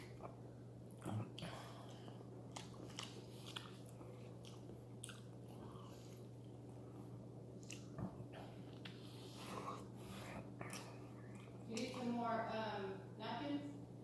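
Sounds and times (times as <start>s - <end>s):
person chewing food: 0.0s - 11.6s
steady low hum: 0.0s - 14.0s.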